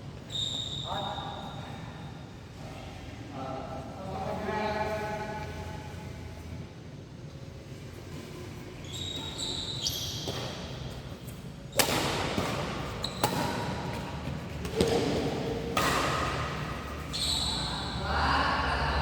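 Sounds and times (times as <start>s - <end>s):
shoe squeaks: 0.2s - 2.0s, 8.3s - 11.8s, 12.8s - 15.0s, 16.8s - 18.0s
racket hitting shuttlecock: 11.7s - 17.1s.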